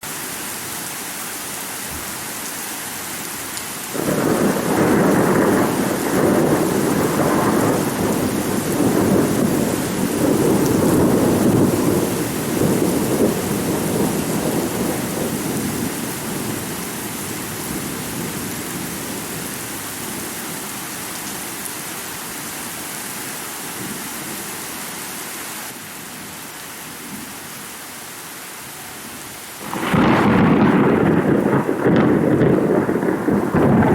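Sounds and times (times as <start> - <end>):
heavy rain: 0.0 - 33.9
thunder rolling: 3.9 - 16.8, 29.6 - 33.9.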